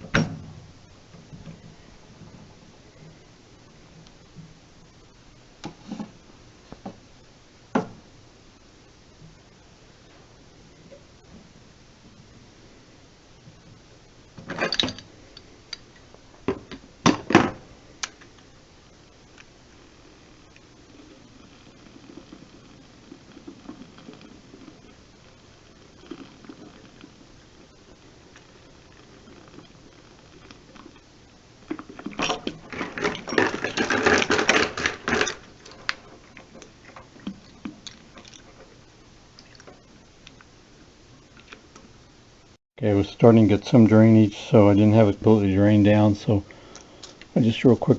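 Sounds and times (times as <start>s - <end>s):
metal clanks and rattles: 14.4s - 15.5s.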